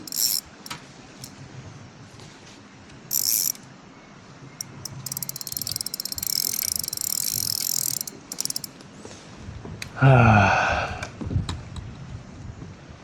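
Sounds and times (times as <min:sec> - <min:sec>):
fishing reel clicking: 0:00.0 - 0:00.6, 0:03.1 - 0:03.6, 0:04.6 - 0:08.7.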